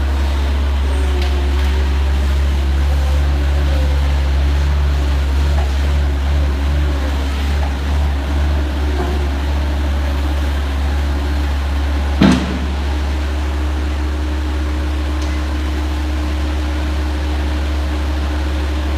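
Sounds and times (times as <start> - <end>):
baler machine hum: 0.0 - 18.9
machine clunk: 12.2 - 13.2.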